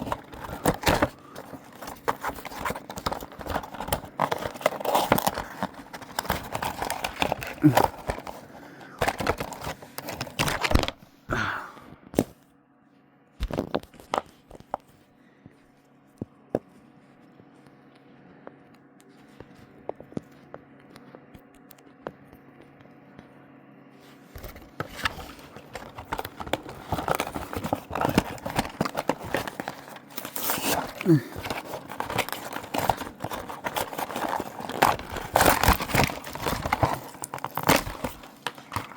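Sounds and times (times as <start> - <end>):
packaging crinkling and tearing: 0.0 - 11.0, 24.4 - 38.9
scattered clicks and handling: 0.0 - 11.0, 24.4 - 38.9.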